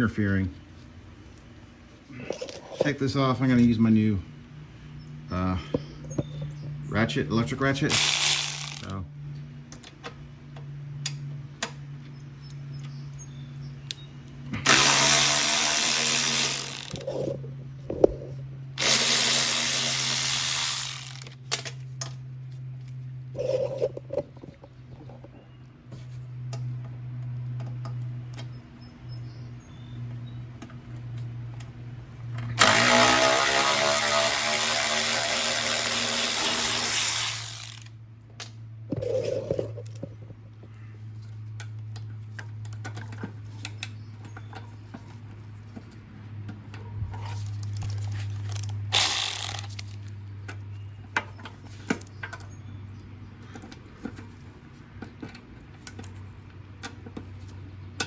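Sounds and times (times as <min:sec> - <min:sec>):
electric ratchet motor whirring: 0:07.9 - 0:09.0, 0:14.6 - 0:17.4, 0:18.8 - 0:21.4, 0:32.5 - 0:38.0, 0:47.8 - 0:50.1.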